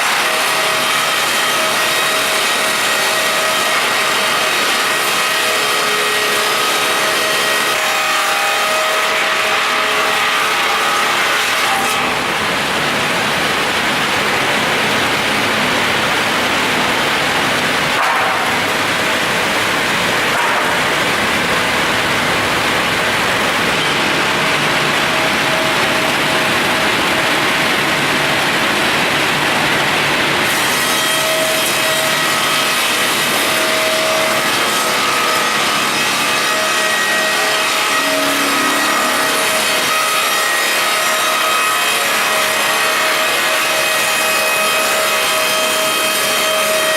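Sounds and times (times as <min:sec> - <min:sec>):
machine sawing wood: 0:00.0 - 0:46.9
steady machine tones: 0:37.1 - 0:41.1.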